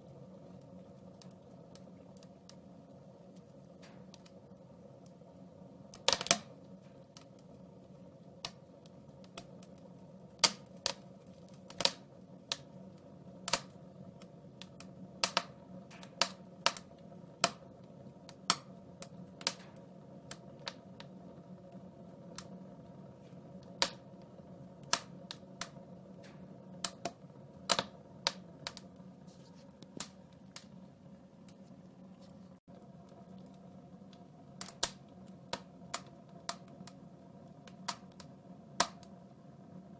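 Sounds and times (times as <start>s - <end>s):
wood fire crackling: 0.0s - 39.9s.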